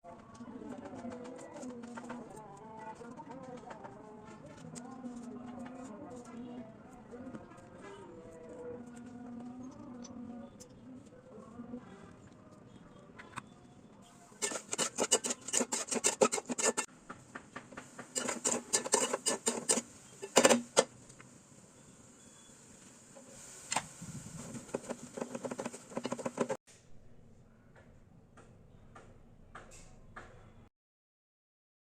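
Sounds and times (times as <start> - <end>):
utensils scraping dishware: 14.4 - 16.9, 18.2 - 20.8, 24.6 - 26.6.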